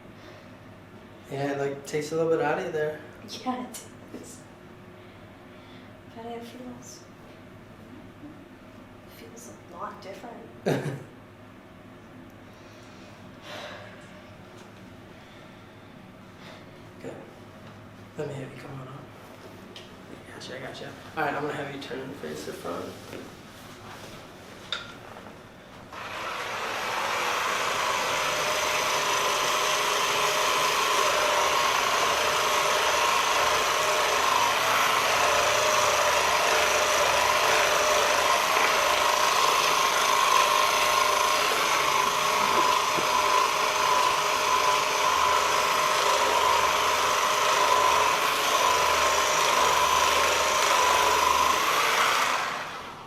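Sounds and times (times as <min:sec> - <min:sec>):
massage gun motor running: 0:25.9 - 0:53.0.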